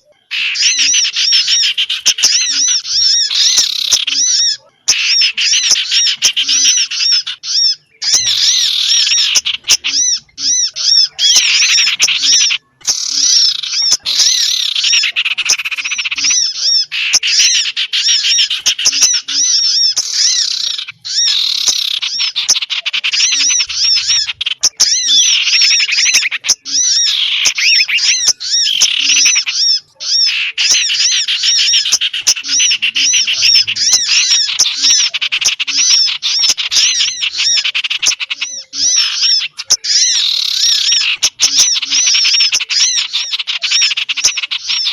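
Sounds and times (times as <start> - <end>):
small birds chirping and twittering: 0.0 - 44.9.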